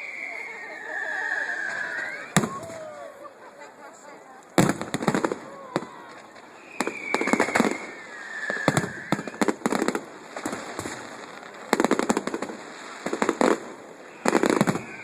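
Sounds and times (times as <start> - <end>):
firework whistle: 0.0 - 3.2, 4.9 - 10.0, 13.2 - 15.0
fireworks cracking: 0.0 - 15.0.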